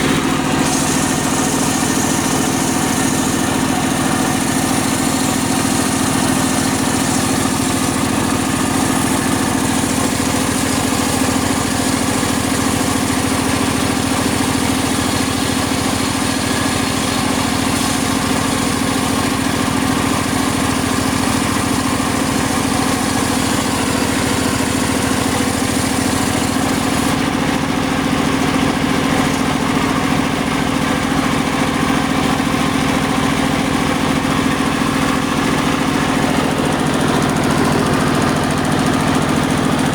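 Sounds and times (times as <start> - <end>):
circular saw droning: 0.0 - 27.3.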